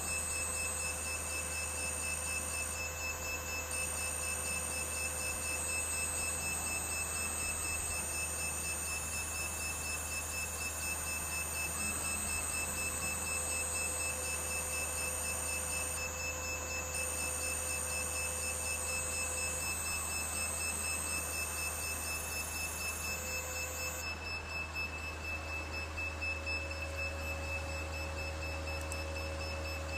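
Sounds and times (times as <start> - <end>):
stepper motors whining: 3.7 - 29.9.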